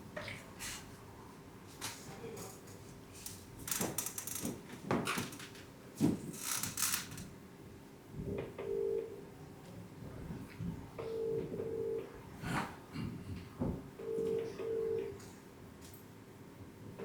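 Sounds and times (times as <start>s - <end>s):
telephone ringback tone: 8.6s - 9.2s, 11.0s - 12.1s, 14.0s - 15.2s.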